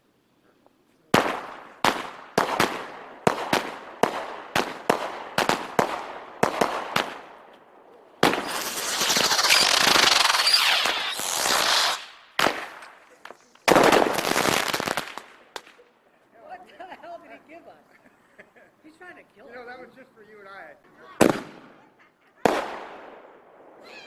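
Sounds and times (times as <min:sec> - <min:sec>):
firework bangs: 0:01.0 - 0:16.0, 0:21.1 - 0:23.8
firework crackling hiss: 0:08.2 - 0:15.8.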